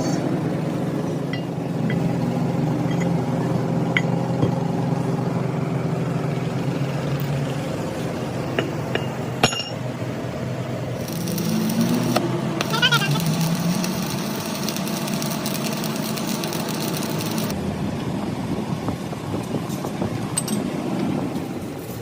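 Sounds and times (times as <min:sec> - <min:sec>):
sharp metallic clinks: 0:08.6 - 0:09.8
mechanical drone: 0:10.6 - 0:18.0.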